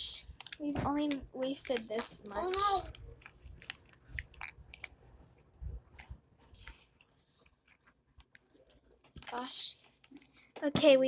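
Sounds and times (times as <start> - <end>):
slime squishing and clicking: 0.4 - 5.0.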